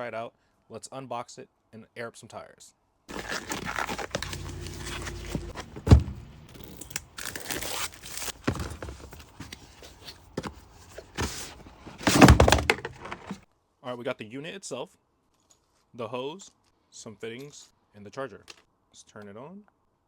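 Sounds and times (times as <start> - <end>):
parts clicking and knocking: 3.1 - 13.4
plastic wrapping rustling and tearing: 3.1 - 13.4.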